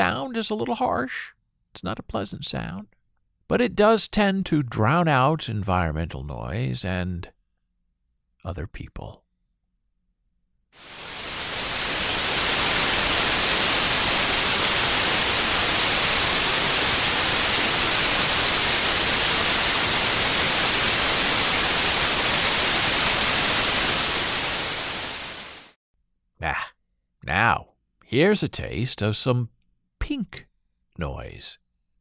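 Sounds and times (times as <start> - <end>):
white noise hiss: 10.8 - 25.7.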